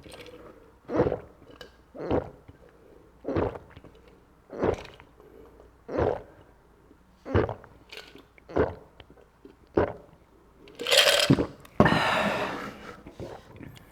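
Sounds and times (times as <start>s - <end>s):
person gulping juice: 0.0s - 6.6s, 7.2s - 13.9s
breathy sounds: 11.8s - 13.4s.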